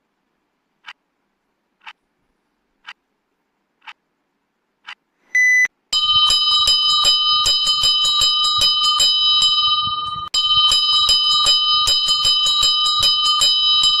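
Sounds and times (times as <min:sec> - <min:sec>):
short electronic beep: 0:05.3 - 0:05.7
alarm bell ringing: 0:06.0 - 0:14.0.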